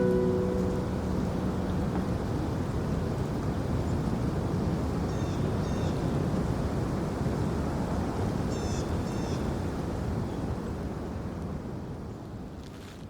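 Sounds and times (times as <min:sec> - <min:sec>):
low outdoor rumble: 0:00.0 - 0:04.3.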